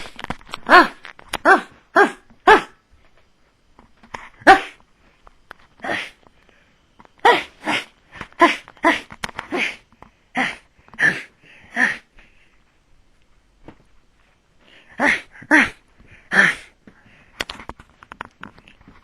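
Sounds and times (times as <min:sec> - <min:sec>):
person imitating dog barks: 0:00.7 - 0:02.8, 0:04.4 - 0:04.8, 0:05.8 - 0:06.2, 0:07.2 - 0:09.8, 0:10.4 - 0:12.1, 0:14.9 - 0:16.7.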